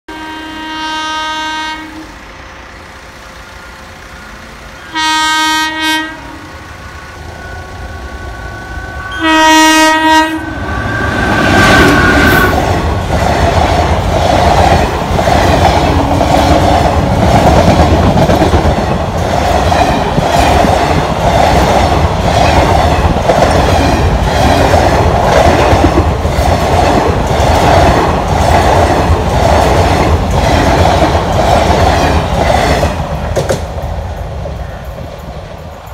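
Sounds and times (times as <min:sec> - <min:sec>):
train horn blasts: 0:00.1 - 0:02.4, 0:04.8 - 0:12.6
train wheels clickety-clack: 0:11.0 - 0:35.9.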